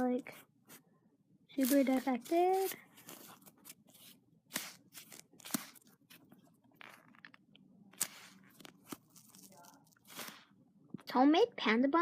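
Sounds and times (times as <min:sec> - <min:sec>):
rustling of foam toy being handled: 0:01.6 - 0:07.2, 0:08.0 - 0:10.5.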